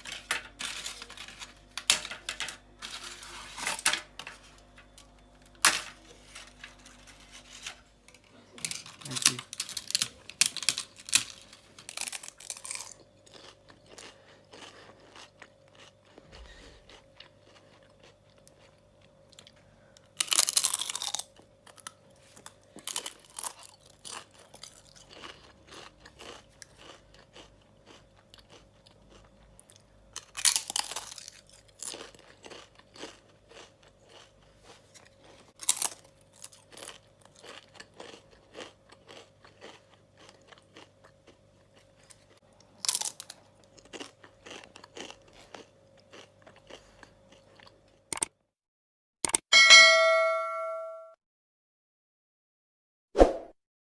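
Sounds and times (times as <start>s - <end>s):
crackling chewing: 0.0s - 48.3s
loud crunching bites: 8.6s - 15.9s, 20.2s - 21.9s, 30.2s - 34.3s, 34.9s - 41.2s, 42.8s - 47.1s.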